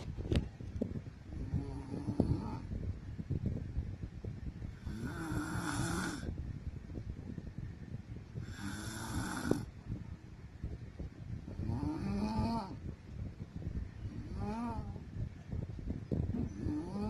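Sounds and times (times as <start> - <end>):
woman snoring: 1.4 - 2.7, 4.8 - 6.3, 8.4 - 9.7, 11.6 - 12.8, 14.2 - 15.0, 16.5 - 17.0.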